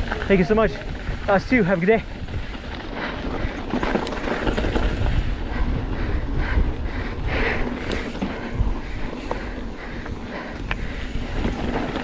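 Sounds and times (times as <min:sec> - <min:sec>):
bike rattling over rocks: 0:00.0 - 0:06.0, 0:07.6 - 0:12.0
wind rushing over microphone: 0:00.0 - 0:12.0.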